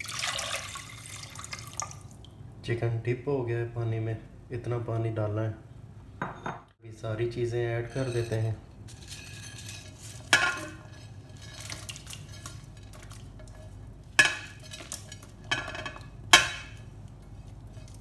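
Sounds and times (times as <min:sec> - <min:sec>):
utensils clinking against pot: 0:07.8 - 0:18.0.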